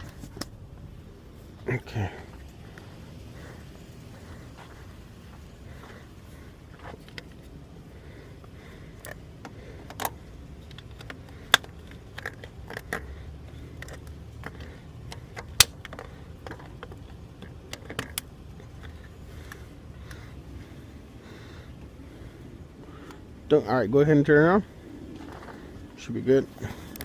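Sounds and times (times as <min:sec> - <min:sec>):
clicks of metal and plastic parts: 0:09.0 - 0:19.6.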